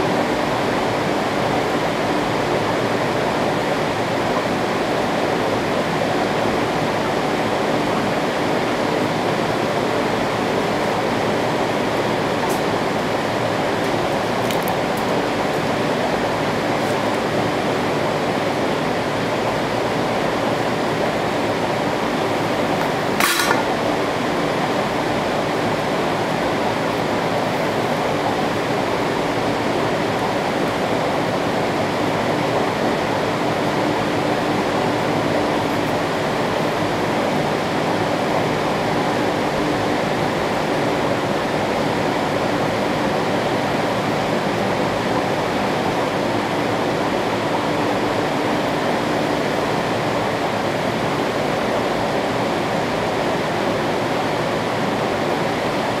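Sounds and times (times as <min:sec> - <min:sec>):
electric fans rushing air: 0:00.0 - 0:56.0
sharp click: 0:22.8 - 0:23.8.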